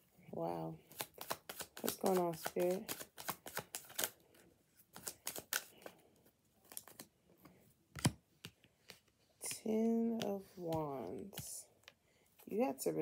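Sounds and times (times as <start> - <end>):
cards being shuffled: 0.8 - 6.0, 6.6 - 11.6.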